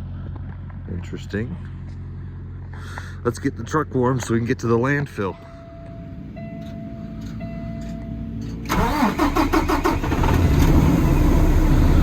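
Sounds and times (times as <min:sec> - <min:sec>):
diesel engine cranking and idling: 0:00.0 - 0:12.0
thin steady warning tone: 0:05.2 - 0:08.6.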